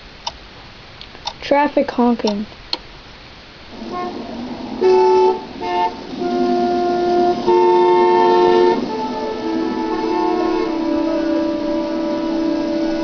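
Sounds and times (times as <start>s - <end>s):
traffic noise: 2.2s - 13.0s
car horns honking: 3.8s - 13.0s.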